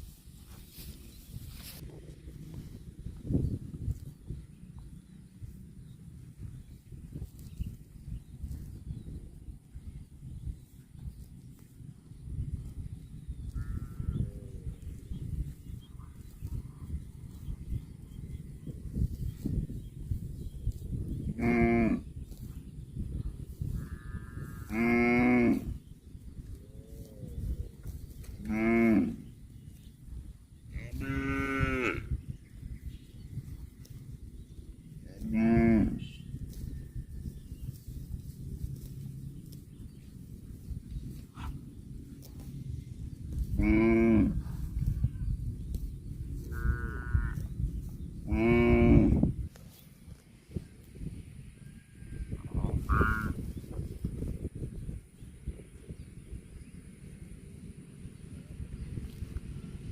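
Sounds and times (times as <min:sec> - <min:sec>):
low rumbling noise: 0:00.0 - 0:59.9
cow mooing: 0:13.6 - 0:14.3, 0:21.4 - 0:22.1, 0:23.8 - 0:25.8, 0:28.4 - 0:29.3, 0:30.8 - 0:32.1, 0:35.2 - 0:36.2, 0:43.5 - 0:44.4, 0:46.5 - 0:47.4, 0:48.3 - 0:49.3, 0:52.9 - 0:53.4
higher-pitched animal call: 0:52.7 - 0:53.4.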